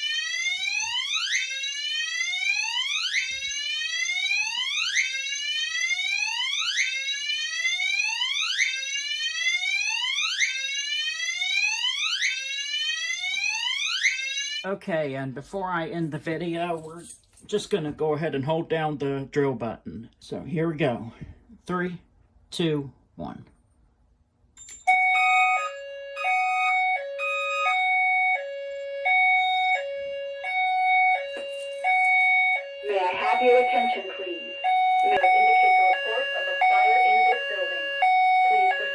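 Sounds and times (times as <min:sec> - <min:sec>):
fire alarm whoop tone: 0:00.0 - 0:14.7, 0:24.9 - 0:38.9.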